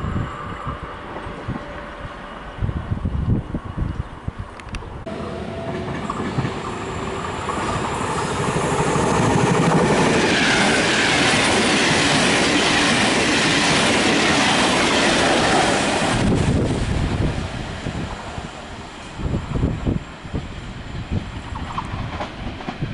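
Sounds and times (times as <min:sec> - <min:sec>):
train wheels running over rails: 0:05.1 - 0:22.9.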